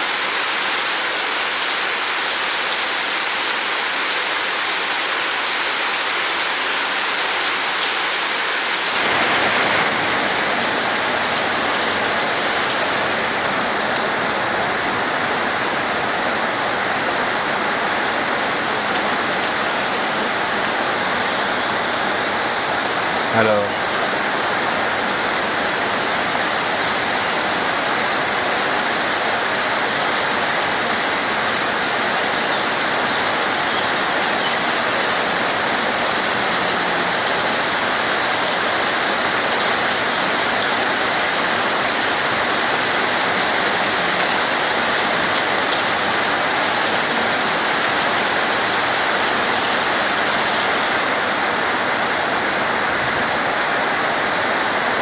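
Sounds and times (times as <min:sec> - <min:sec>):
dense rain hiss: 0:00.0 - 0:55.0.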